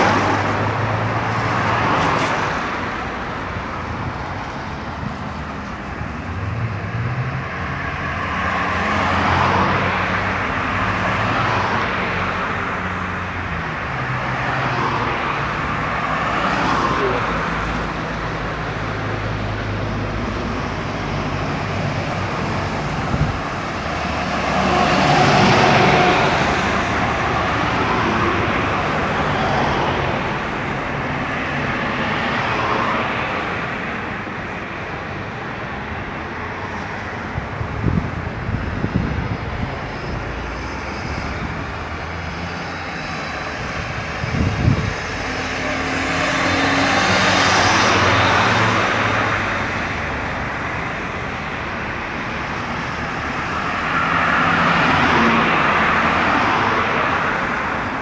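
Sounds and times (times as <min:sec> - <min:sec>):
cars passing by: 0:00.0 - 0:58.0
highway traffic: 0:00.0 - 0:58.0.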